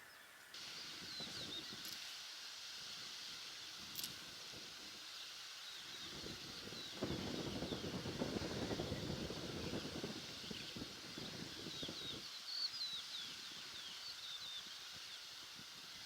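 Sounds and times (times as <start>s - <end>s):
faint bird chirps: 0.0s - 2.0s, 10.4s - 15.4s.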